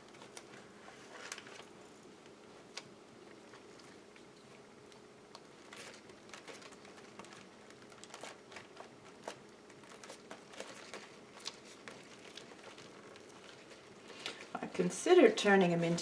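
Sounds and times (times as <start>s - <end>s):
paper rustling and crinkling: 0.0s - 1.6s, 5.4s - 16.0s.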